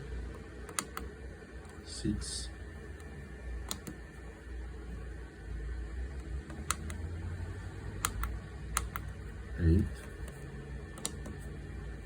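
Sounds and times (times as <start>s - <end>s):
control panel buttons clicking: 0.3s - 1.8s, 3.0s - 4.0s, 6.2s - 7.0s, 7.9s - 9.2s, 9.9s - 11.5s.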